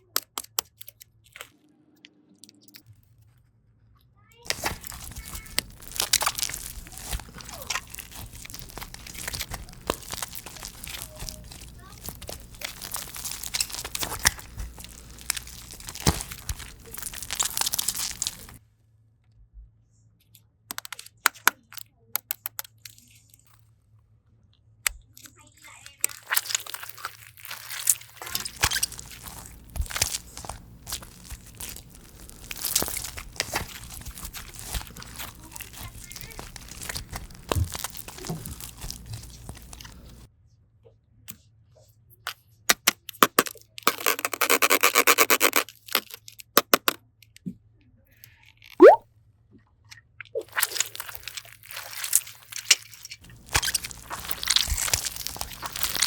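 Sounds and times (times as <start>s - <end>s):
slime crackling and popping: 4.4s - 18.6s, 25.9s - 40.3s, 43.2s - 46.1s, 48.8s - 49.0s, 50.4s - 56.0s.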